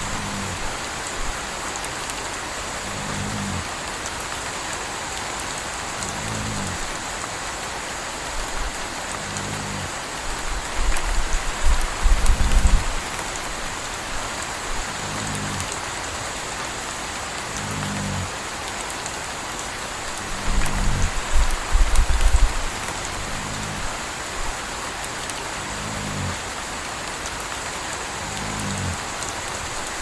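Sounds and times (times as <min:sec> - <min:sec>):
puppy snoring softly: 0:00.0 - 0:00.7, 0:02.8 - 0:03.7, 0:06.0 - 0:07.0, 0:09.1 - 0:09.9, 0:10.8 - 0:13.0, 0:14.7 - 0:15.7, 0:17.4 - 0:18.3, 0:20.2 - 0:24.0, 0:25.6 - 0:26.4, 0:28.2 - 0:29.0
steady rain falling: 0:00.0 - 0:30.0.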